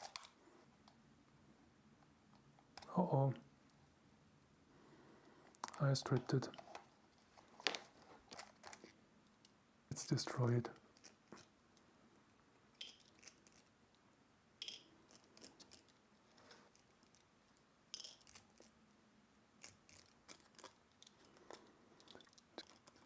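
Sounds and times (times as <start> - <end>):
small tools and screws clicking: 0.0 - 0.4, 11.0 - 11.5, 12.8 - 13.7, 14.6 - 16.0, 16.7 - 17.3, 17.9 - 18.7, 19.6 - 23.0.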